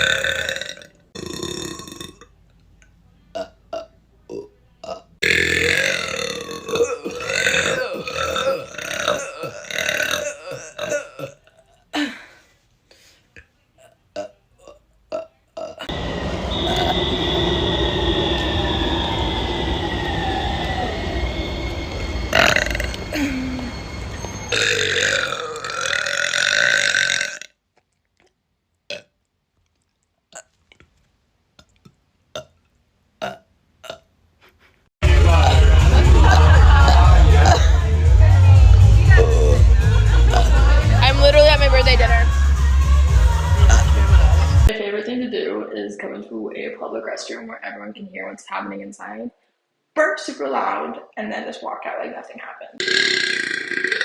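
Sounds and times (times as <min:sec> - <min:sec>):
person burping loudly: 0:00.0 - 0:02.4, 0:03.3 - 0:12.2, 0:13.8 - 0:16.0, 0:22.3 - 0:23.8, 0:24.5 - 0:27.6, 0:33.2 - 0:34.1, 0:35.1 - 0:37.8, 0:39.1 - 0:40.9, 0:43.6 - 0:44.1, 0:52.8 - 0:54.0.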